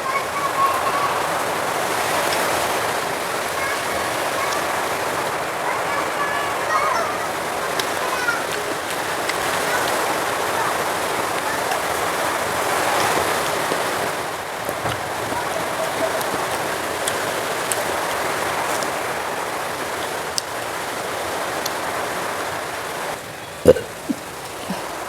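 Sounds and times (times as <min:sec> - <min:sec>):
faint eating clicks: 0:07.7 - 0:13.8, 0:14.6 - 0:19.1, 0:19.8 - 0:20.6, 0:23.6 - 0:25.0.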